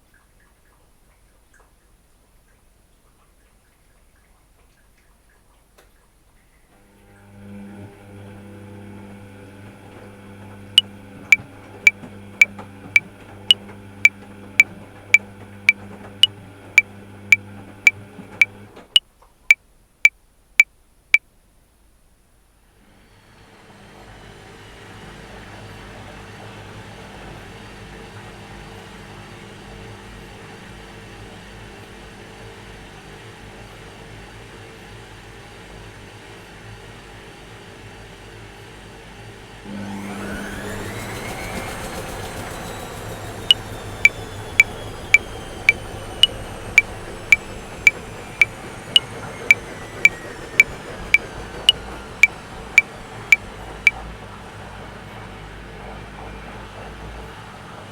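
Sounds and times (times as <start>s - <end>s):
washing machine hum: 6.8s - 18.9s
washing machine whirring: 6.8s - 18.9s, 39.1s - 57.9s.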